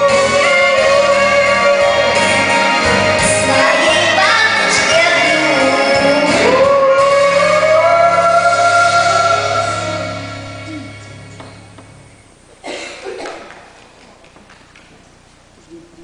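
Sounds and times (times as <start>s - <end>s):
woman singing blues: 0.0s - 10.0s
instrumental accompaniment with bass: 0.0s - 12.4s.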